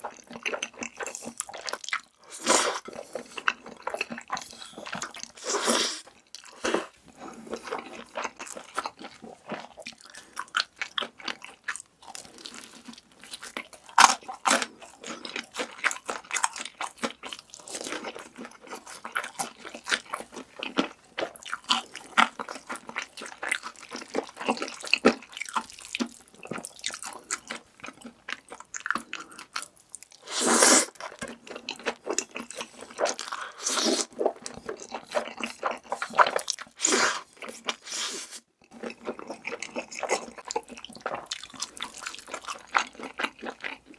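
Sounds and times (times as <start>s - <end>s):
crunchy food chewing: 0.0s - 43.9s.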